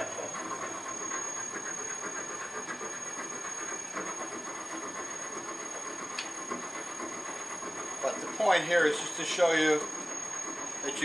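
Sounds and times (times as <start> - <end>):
wood lathe hissing: 0.0 - 11.0.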